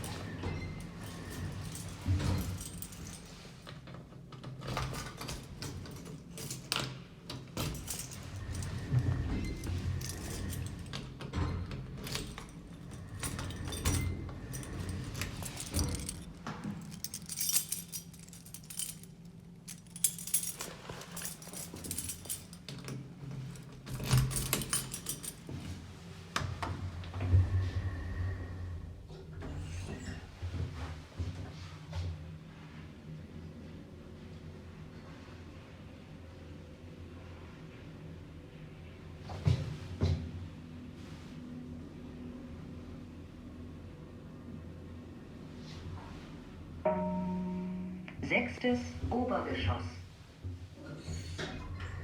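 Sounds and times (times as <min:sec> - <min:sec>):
elevator rattling and clicking: 0:00.0 - 0:25.8
elevator humming: 0:07.5 - 0:26.1.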